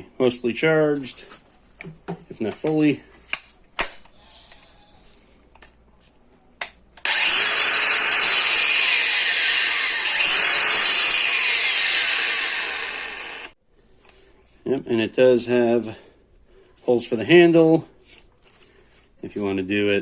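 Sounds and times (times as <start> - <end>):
angle grinder whirring: 7.0 - 13.6.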